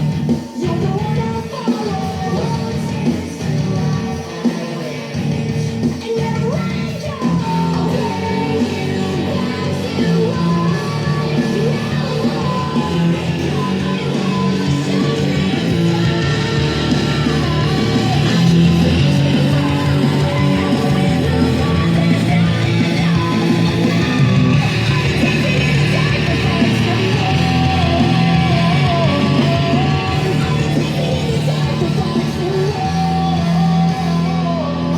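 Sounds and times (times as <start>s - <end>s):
sped-up rock song with singing: 0.0s - 34.9s.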